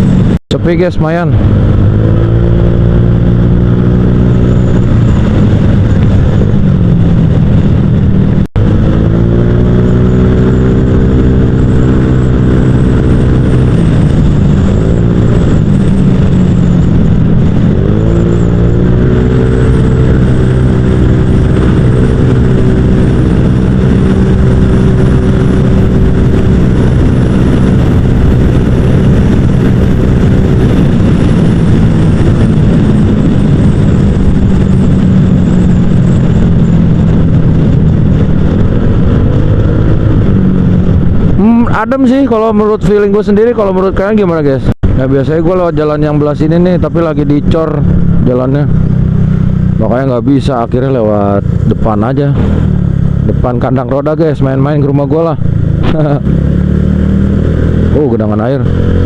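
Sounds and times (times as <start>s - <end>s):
scooter engine running: 1.4s - 41.6s.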